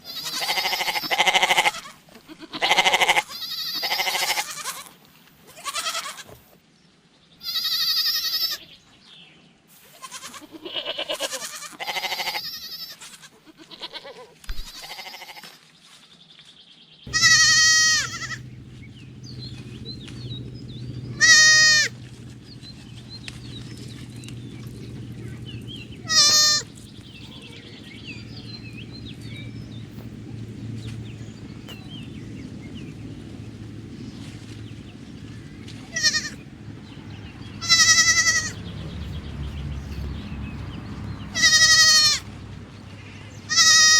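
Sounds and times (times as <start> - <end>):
goats bleating: 0.0 - 6.4, 7.4 - 8.6, 10.0 - 15.5, 17.1 - 31.1, 35.5 - 38.6, 41.2 - 42.4, 43.3 - 43.9
low hum: 17.1 - 43.4.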